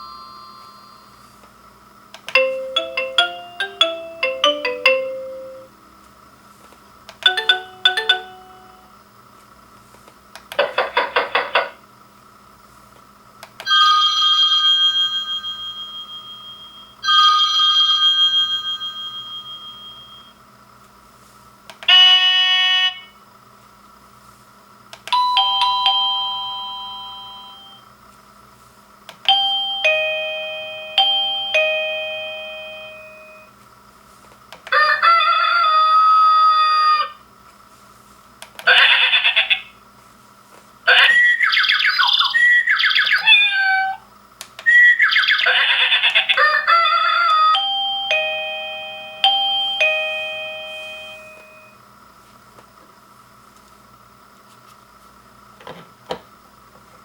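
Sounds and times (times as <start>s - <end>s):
doorbell chime melodies: 0.0s - 1.4s, 2.3s - 5.7s, 7.2s - 9.0s, 13.7s - 20.4s, 25.2s - 27.9s, 29.3s - 33.5s, 47.5s - 51.8s.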